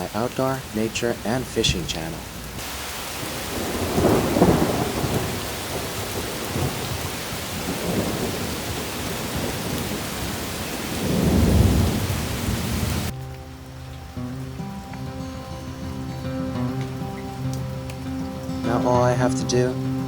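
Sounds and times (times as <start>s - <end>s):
thunder rumbling: 0.0s - 14.8s
heavy rain falling: 0.0s - 20.0s.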